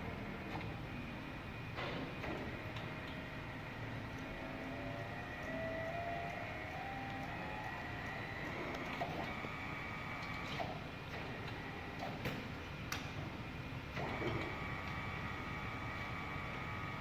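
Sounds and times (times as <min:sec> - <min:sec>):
faint motor whine: 0:00.0 - 0:17.0
electric turntable drive humming: 0:02.8 - 0:12.0.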